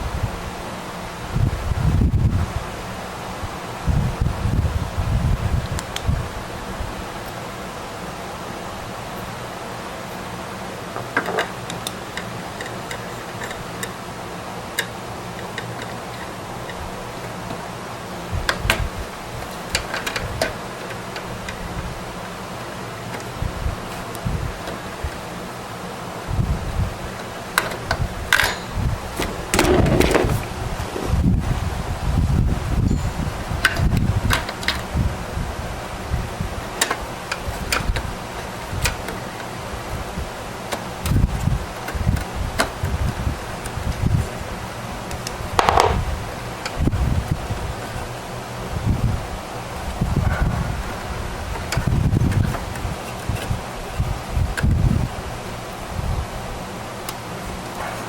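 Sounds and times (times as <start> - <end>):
steady low hum: 0.0 - 58.0
low handling rumble: 27.9 - 33.1
hardware clicks and knocks: 45.6 - 46.2.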